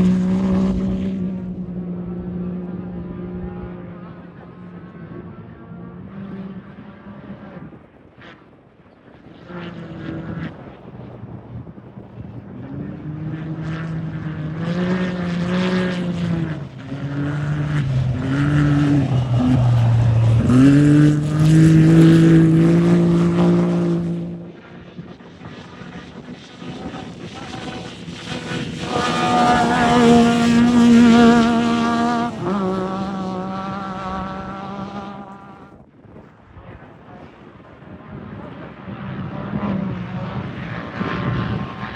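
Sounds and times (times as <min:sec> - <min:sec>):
race vehicle engines revving: 0:00.0 - 0:35.9, 0:37.0 - 0:41.9.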